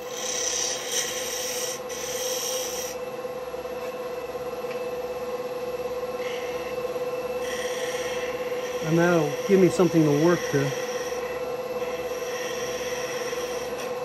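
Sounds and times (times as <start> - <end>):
lathe tool cutting wood hissing: 0.0 - 3.0, 6.0 - 14.0
wood lathe motor hum: 0.0 - 14.0.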